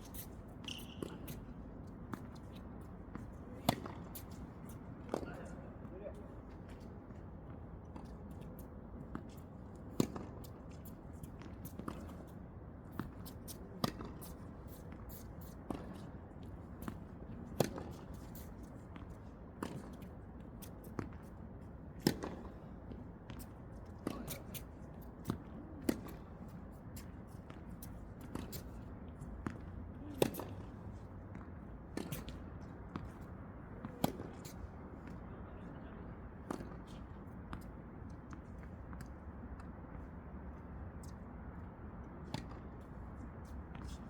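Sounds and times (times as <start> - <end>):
tennis balls bouncing on court: 3.1 - 4.4.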